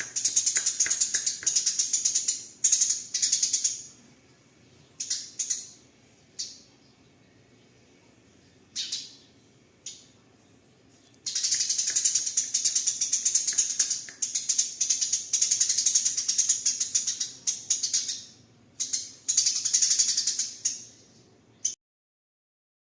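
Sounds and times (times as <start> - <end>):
sparrow chirping and chattering: 0.0 - 21.8.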